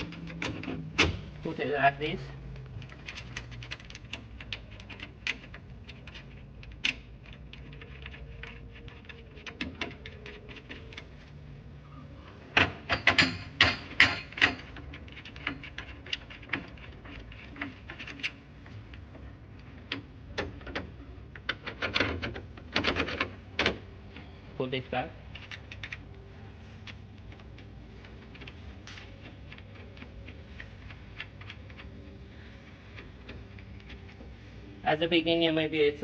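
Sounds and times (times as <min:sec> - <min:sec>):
bed frame parts clicking and knocking: 0:00.0 - 0:01.6, 0:02.6 - 0:11.2, 0:12.5 - 0:23.9.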